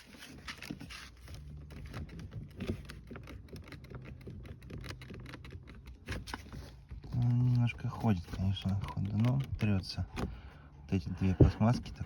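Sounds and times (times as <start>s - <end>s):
plastic trim rubbing: 0.0s - 12.0s
door handle clicking and creaking: 1.7s - 6.1s.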